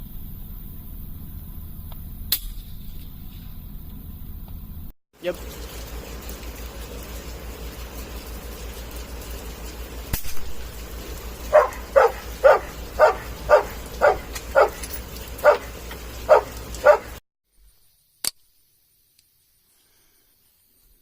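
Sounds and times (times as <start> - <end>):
background hum: 0.0 - 21.0
dog barking: 11.4 - 17.2
sharp click: 18.2 - 18.4.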